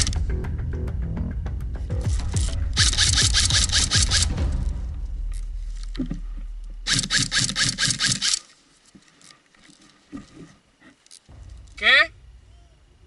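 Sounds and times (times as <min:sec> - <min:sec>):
airsoft rifle rapid burst: 0:02.1 - 0:04.4, 0:06.8 - 0:08.4.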